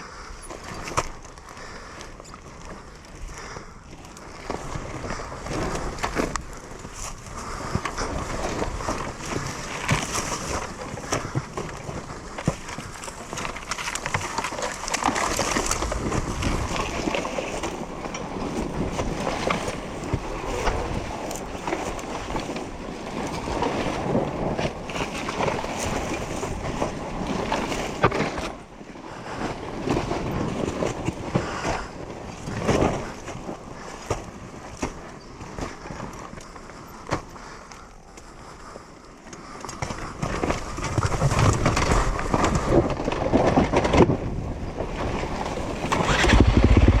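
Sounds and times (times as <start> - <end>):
clatter over rough ground: 0.0 - 47.0
wind buffeting microphone: 15.3 - 36.1, 40.1 - 47.0
dirt bike engine: 45.8 - 47.0.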